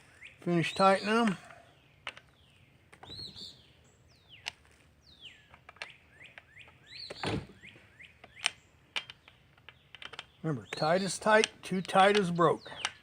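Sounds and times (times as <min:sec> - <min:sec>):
bird singing: 0:00.0 - 0:13.0
thump: 0:07.2 - 0:07.5
sharp clicks of hand work: 0:08.2 - 0:13.0.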